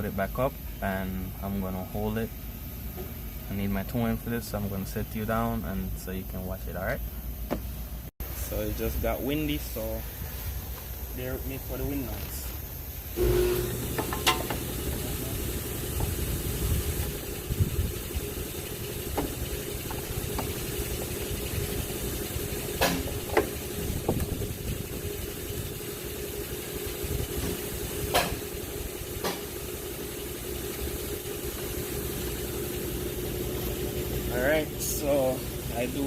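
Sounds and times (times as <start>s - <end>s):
steady low hum: 0.0s - 36.0s
metal clanks and knocks: 13.9s - 14.7s
wind buffeting microphone: 15.9s - 20.5s, 23.8s - 25.7s.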